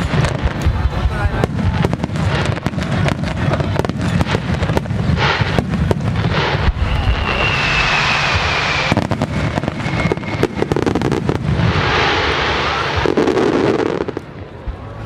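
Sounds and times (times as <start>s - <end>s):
fireworks bangs and crackling: 0.0s - 15.0s
falling whistle: 6.6s - 11.1s.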